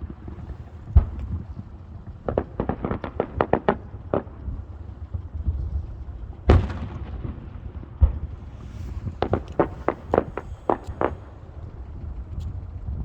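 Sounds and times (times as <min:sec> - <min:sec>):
fireworks bangs: 0:00.0 - 0:04.6, 0:08.0 - 0:12.4
fireworks crackling: 0:00.0 - 0:12.8
low rumble: 0:00.0 - 0:13.0.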